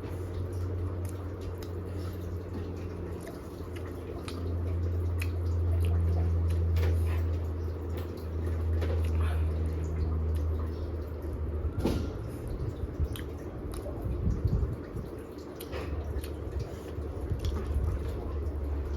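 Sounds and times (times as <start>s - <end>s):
steady low hum: 0.0s - 18.9s
wet chewing and lip smacks: 1.0s - 7.4s, 13.0s - 18.9s.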